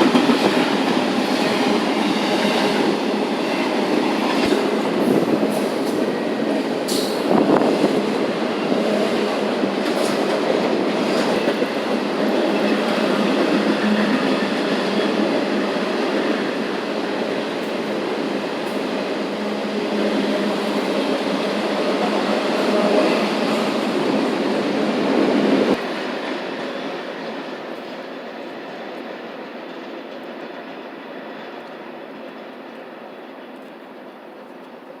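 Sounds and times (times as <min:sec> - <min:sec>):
steel wheels on rail: 0:00.0 - 0:35.0.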